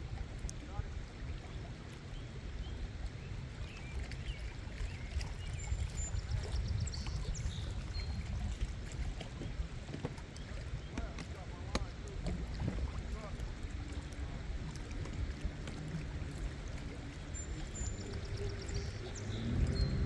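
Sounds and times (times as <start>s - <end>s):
steady low rumble: 11.9s - 20.0s.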